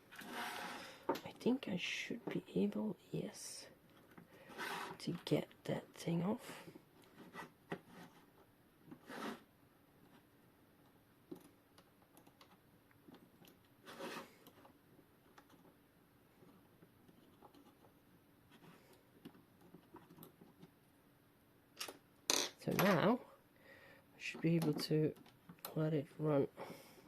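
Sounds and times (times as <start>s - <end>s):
rustling scrapes: 0.1s - 1.0s, 4.4s - 5.0s, 7.1s - 8.4s, 9.0s - 9.5s, 13.8s - 14.4s.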